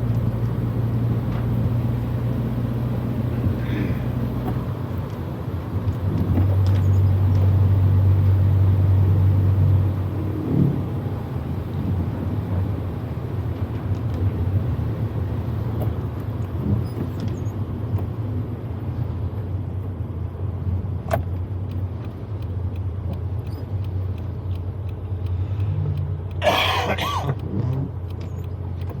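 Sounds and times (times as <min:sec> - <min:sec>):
car engine running steadily: 0:00.0 - 0:29.0
person coughing: 0:26.4 - 0:27.4.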